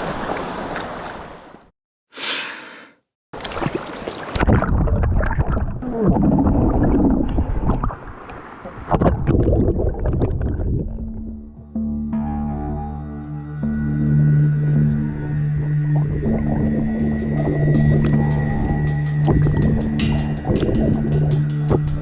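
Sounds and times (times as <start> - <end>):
water splashing and gurgling: 3.4 - 11.2.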